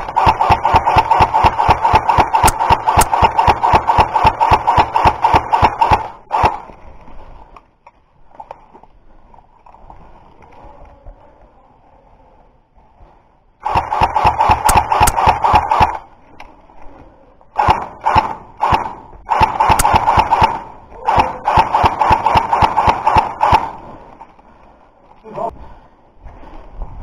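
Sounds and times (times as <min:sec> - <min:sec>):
airsoft rifle automatic fire: 0:00.0 - 0:06.8, 0:13.6 - 0:16.1, 0:17.6 - 0:24.1.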